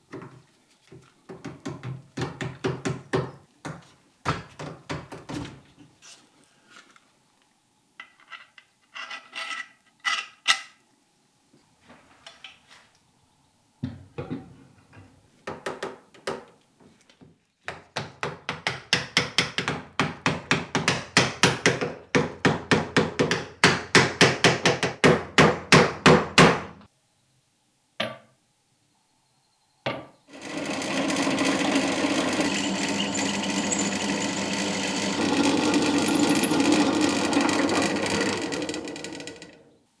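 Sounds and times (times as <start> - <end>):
power tool running: 30.3 - 39.6.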